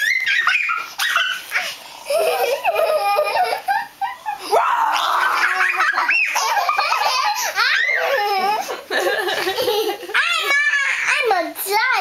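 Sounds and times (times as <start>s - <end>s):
people laughing and giggling: 2.1s - 4.6s, 5.4s - 10.2s.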